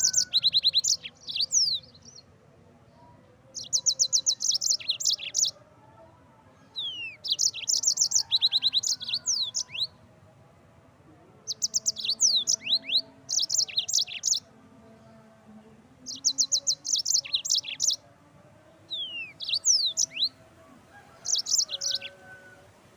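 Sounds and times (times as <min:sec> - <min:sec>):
canary singing: 0:00.0 - 0:02.4, 0:03.4 - 0:05.6, 0:06.6 - 0:10.0, 0:11.4 - 0:18.1, 0:18.7 - 0:22.9.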